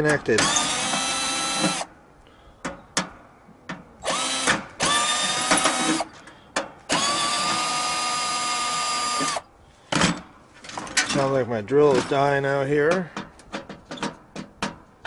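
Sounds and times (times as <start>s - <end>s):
cordless drill whining: 0.4s - 1.9s, 4.0s - 6.2s, 6.9s - 9.5s.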